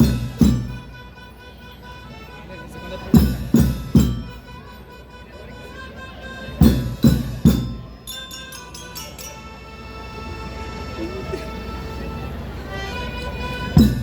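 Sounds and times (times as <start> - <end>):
sharp bright drum strokes: 0.0 - 1.0, 3.2 - 4.6, 6.6 - 9.0, 13.7 - 14.0
heavy drum strikes: 0.0 - 1.1, 3.1 - 4.6, 6.6 - 8.8, 13.7 - 14.0
marching band playing: 0.0 - 14.0
held tone: 6.1 - 9.6.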